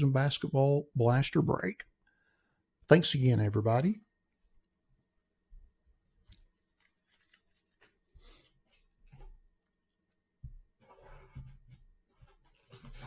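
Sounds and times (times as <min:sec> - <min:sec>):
rustling on tabletop: 0:06.2 - 0:13.0.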